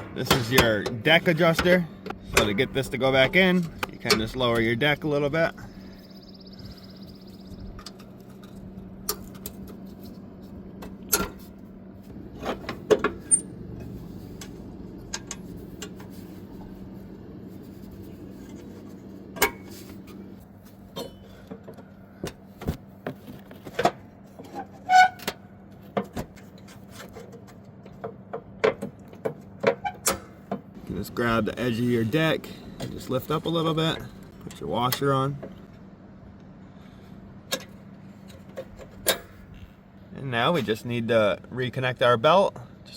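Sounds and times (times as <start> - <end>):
metallic clanks and clicks: 0.0 - 4.7, 12.4 - 16.1.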